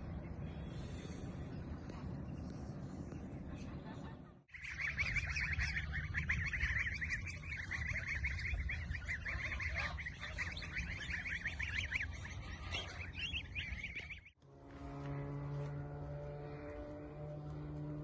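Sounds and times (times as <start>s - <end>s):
birds chirping and twittering: 0.0s - 14.4s.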